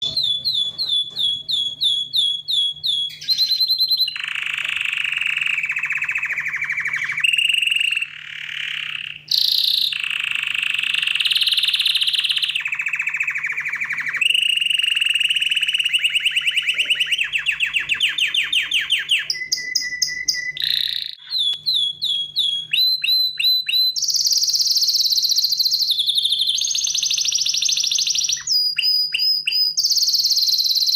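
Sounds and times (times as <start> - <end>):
parrots chattering: 12.6 - 22.7.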